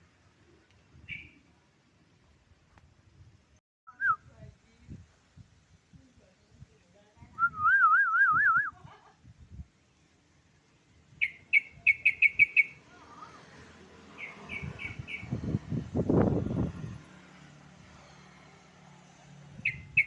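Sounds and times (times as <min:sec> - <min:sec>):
bird chirps: 0:01.0 - 0:01.4, 0:11.1 - 0:12.8, 0:14.1 - 0:15.4, 0:19.6 - 0:20.0.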